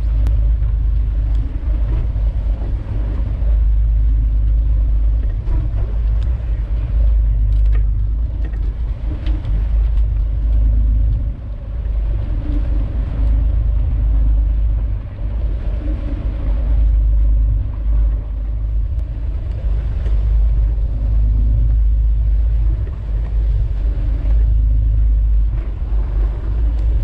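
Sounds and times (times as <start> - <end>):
faint ticks: 0.0 - 2.1, 4.4 - 6.7, 18.6 - 20.4, 25.6 - 27.0
boat engine rumble: 0.0 - 27.0.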